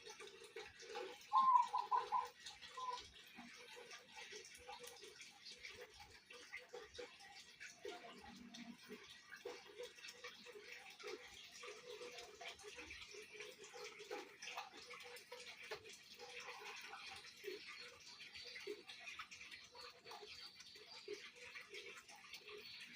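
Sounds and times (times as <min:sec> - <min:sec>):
dove cooing: 0:00.9 - 0:03.1.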